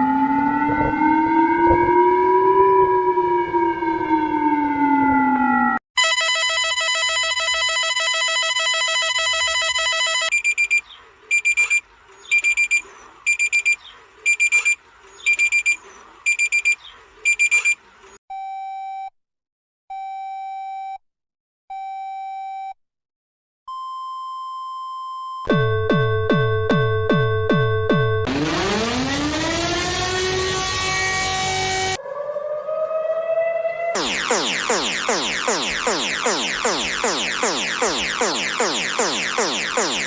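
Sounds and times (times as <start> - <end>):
electronic alarm tones: 5.6 - 17.8, 33.9 - 40.0.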